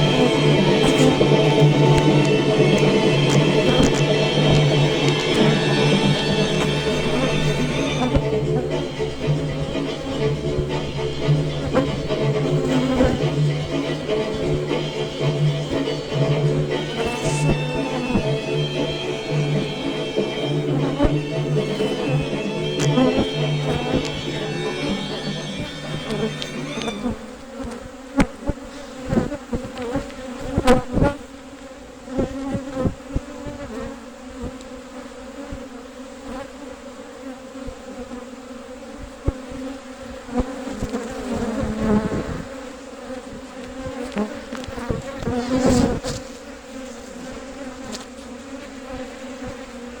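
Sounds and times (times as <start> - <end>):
music: 0.0 - 27.3
honey bees buzzing: 0.0 - 50.0.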